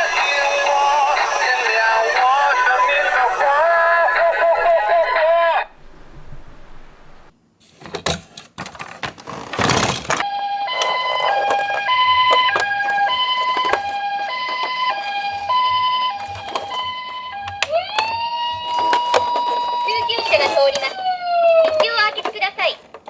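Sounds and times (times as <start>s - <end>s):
toy electronic siren: 0.0s - 3.7s, 10.2s - 22.9s
clicks: 9.2s - 23.0s.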